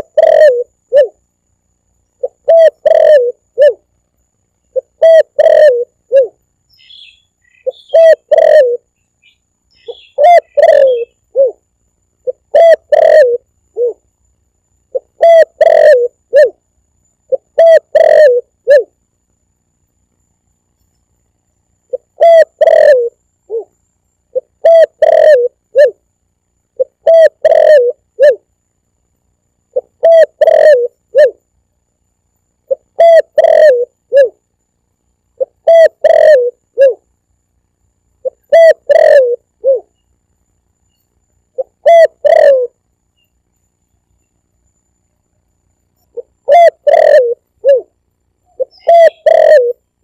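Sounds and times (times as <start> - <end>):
dove cooing: 0.0 - 1.2, 2.2 - 3.9, 4.7 - 6.4, 7.6 - 8.9, 9.8 - 11.6, 12.2 - 14.0, 14.9 - 16.6, 17.3 - 18.9, 21.9 - 26.0, 26.8 - 28.4, 29.7 - 31.4, 32.7 - 34.4, 35.4 - 37.0, 38.2 - 39.9, 41.6 - 42.8, 46.1 - 47.9, 48.5 - 49.8.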